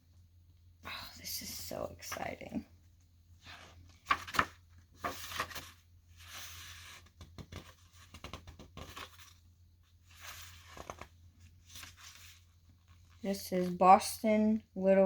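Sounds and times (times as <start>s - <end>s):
book pages turning: 3.4s - 13.7s.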